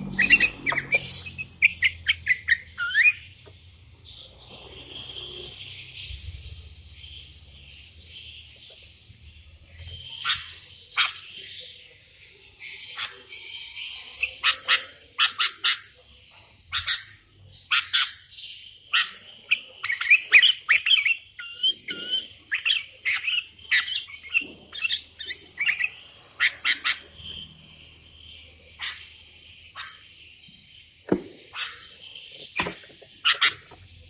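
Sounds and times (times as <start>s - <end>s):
bird chirping and whistling: 0.0s - 3.4s, 19.0s - 27.4s.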